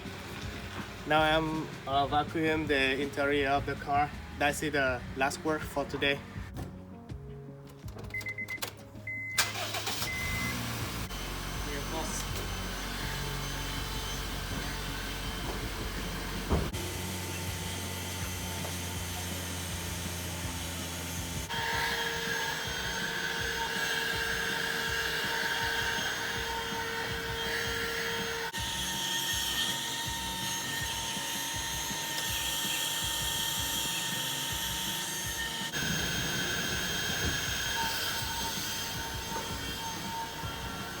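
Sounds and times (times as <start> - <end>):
car vacuum cleaner running: 9.4 - 29.0, 35.6 - 41.0.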